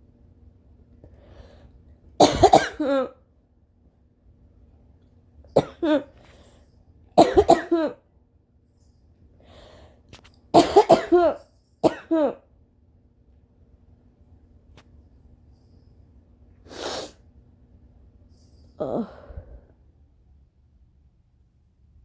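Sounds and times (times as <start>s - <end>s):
woman coughing: 2.2s - 3.2s, 5.6s - 6.2s, 7.2s - 8.0s, 10.6s - 12.5s.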